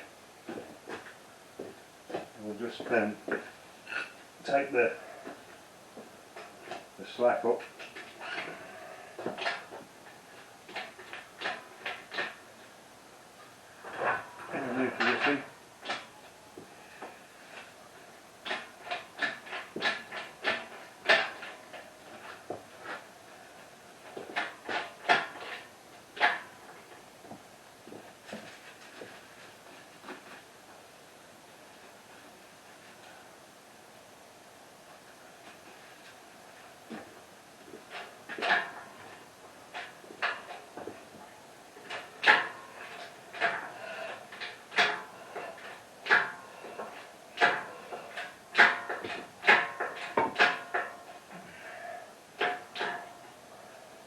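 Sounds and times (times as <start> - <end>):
hydraulic hand pump creaking clunks: 18.4 - 29.2, 36.9 - 51.7.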